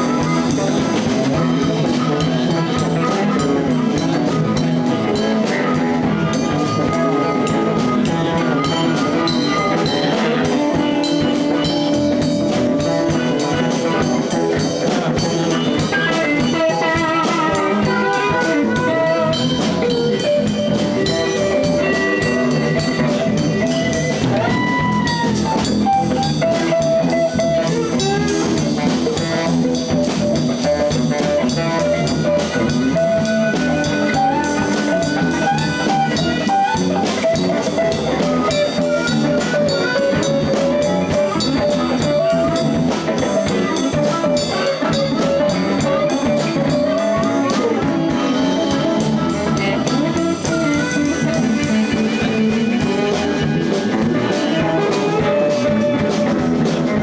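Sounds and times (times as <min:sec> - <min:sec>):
bass guitar: 0:00.0 - 0:57.0
drum kit: 0:00.0 - 0:57.0
electric guitar lead: 0:00.0 - 0:57.0.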